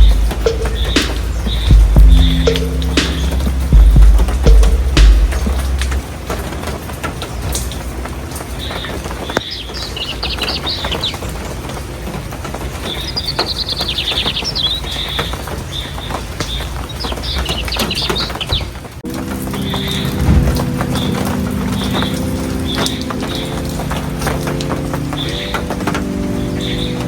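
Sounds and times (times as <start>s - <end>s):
steady outdoor background: 0.0s - 27.0s
birds trilling: 12.8s - 27.0s.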